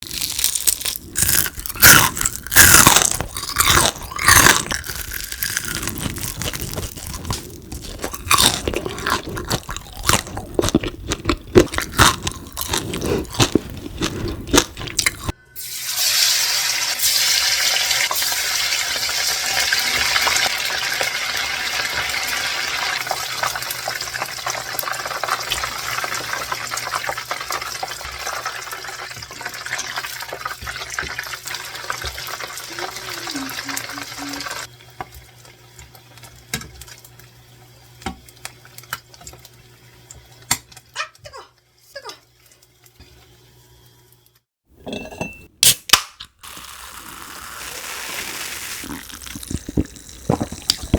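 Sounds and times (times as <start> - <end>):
crunchy biting and chewing: 0.0 - 15.3, 46.4 - 50.9.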